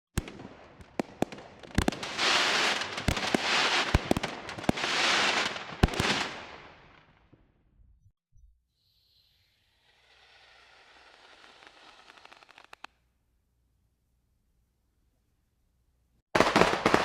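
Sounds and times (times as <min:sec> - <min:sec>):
firework bangs: 0:00.1 - 0:07.1, 0:09.8 - 0:12.9, 0:16.4 - 0:17.0
fireworks crackling hiss: 0:01.6 - 0:06.5, 0:08.8 - 0:12.9.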